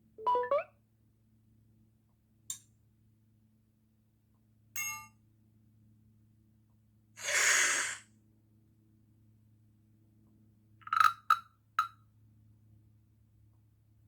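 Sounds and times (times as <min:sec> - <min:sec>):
hiss-like burst: 0:07.2 - 0:08.0.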